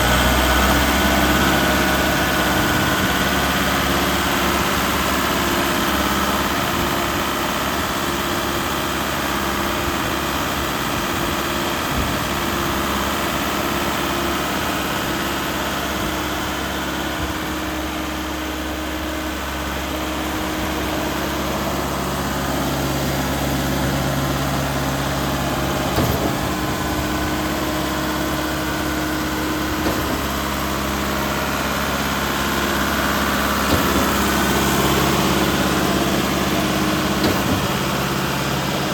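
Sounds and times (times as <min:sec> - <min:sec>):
diesel engine running: 0:00.0 - 0:38.9
brief knocks: 0:33.6 - 0:34.4, 0:37.2 - 0:38.0.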